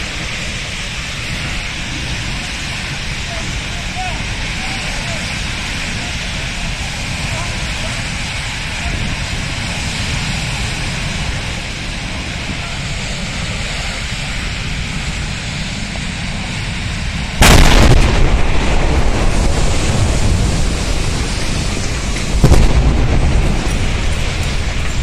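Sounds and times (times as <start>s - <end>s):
fire blaze roaring: 0.0s - 25.0s
long rumble: 0.0s - 25.0s
gas cylinder explosion boom: 17.4s - 24.8s.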